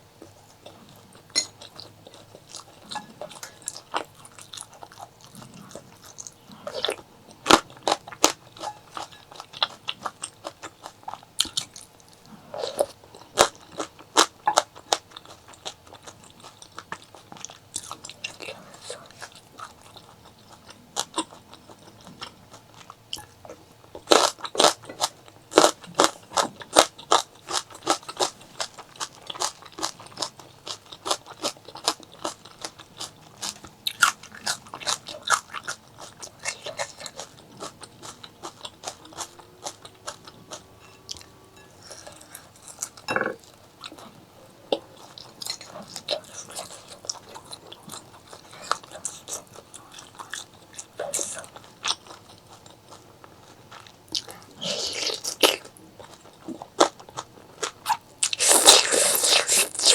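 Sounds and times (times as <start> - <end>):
person biting and chewing food: 57.6 - 59.9.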